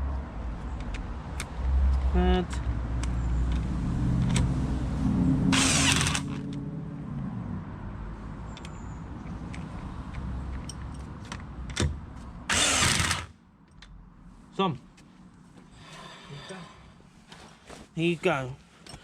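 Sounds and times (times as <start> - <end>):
impact wrench burst: 5.5 - 6.4, 12.5 - 13.3.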